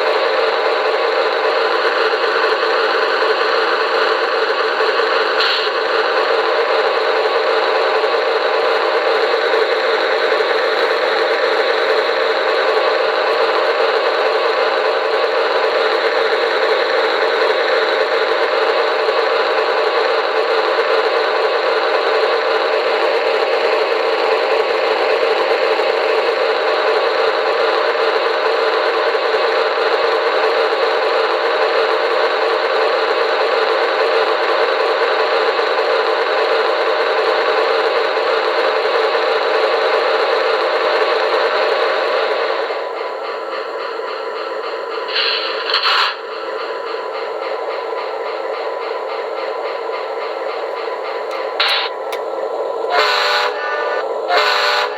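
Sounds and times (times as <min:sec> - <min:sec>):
diesel locomotive engine drone: 0:00.0 - 0:54.9.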